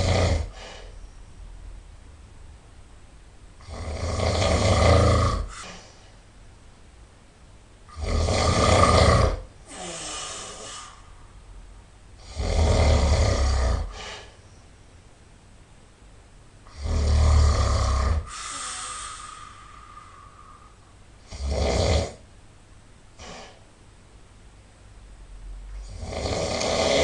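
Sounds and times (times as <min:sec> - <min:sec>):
person snoring loudly: 0:00.0 - 0:00.8, 0:03.6 - 0:05.8, 0:07.9 - 0:11.0, 0:12.2 - 0:14.2, 0:16.7 - 0:19.6, 0:21.2 - 0:22.2, 0:25.8 - 0:27.0
quiet breath: 0:00.0 - 0:01.4, 0:05.4 - 0:06.3, 0:09.6 - 0:11.5, 0:13.8 - 0:14.8, 0:18.1 - 0:21.0, 0:23.2 - 0:23.7.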